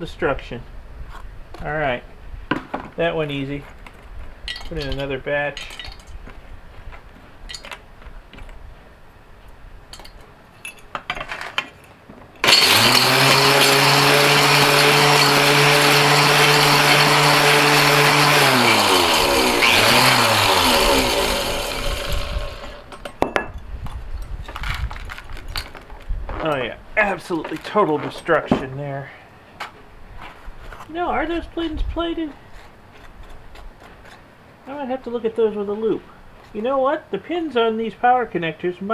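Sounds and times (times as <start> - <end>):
light clinking and handling: 3.6 - 8.6, 9.9 - 12.1, 22.9 - 26.7.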